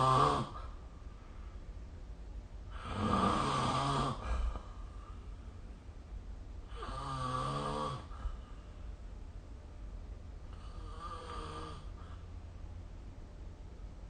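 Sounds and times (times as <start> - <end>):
person snoring: 0.0 - 0.7, 2.7 - 4.6, 6.7 - 8.2, 10.6 - 12.0.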